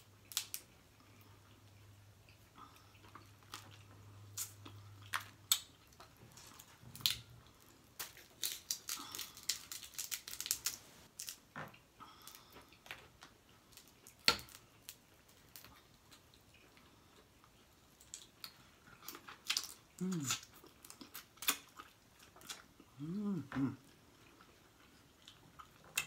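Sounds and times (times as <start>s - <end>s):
crab shell cracking: 0.3s - 0.6s, 8.0s - 11.4s
wet chewing and smacking: 12.4s - 23.1s, 23.8s - 26.0s.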